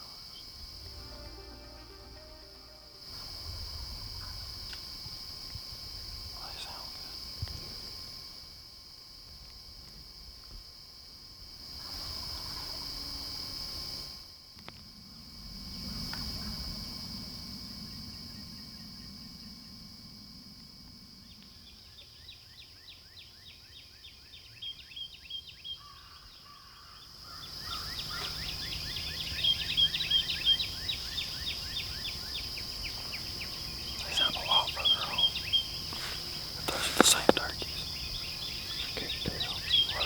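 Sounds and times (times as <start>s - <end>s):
insects droning: 0.0s - 40.0s
birds chirping: 33.4s - 40.0s.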